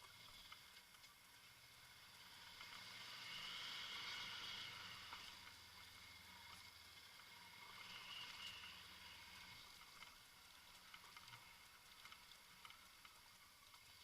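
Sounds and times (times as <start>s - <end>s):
faint steady hiss: 0.0s - 14.0s
faint ticks: 0.0s - 14.0s.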